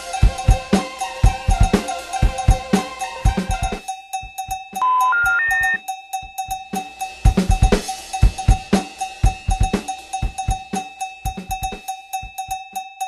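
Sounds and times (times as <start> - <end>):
high electronic beep: 4.8 - 5.8
drum-kit beat: 7.3 - 11.8.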